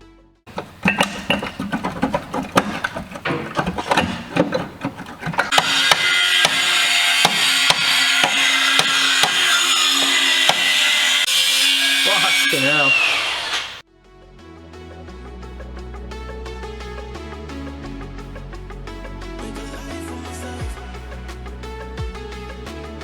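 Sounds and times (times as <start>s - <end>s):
power tool running: 0.5s - 13.8s.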